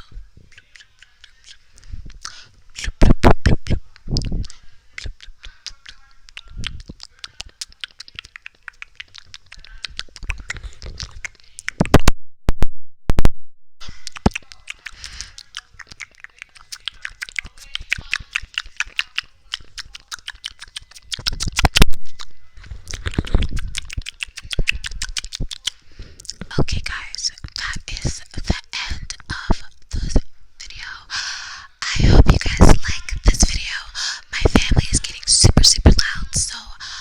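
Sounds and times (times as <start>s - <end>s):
wet tongue and lip clicks: 0.4s - 12.1s, 13.8s - 37.0s.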